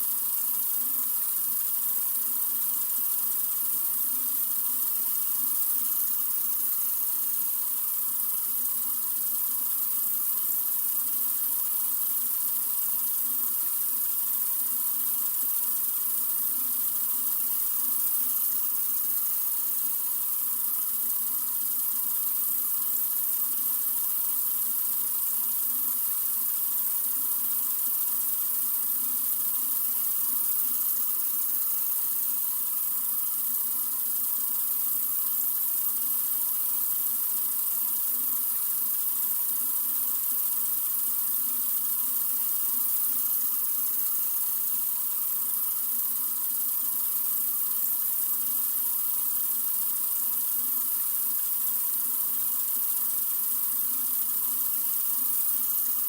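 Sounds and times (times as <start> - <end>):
water running from faucet: 0.0 - 56.0.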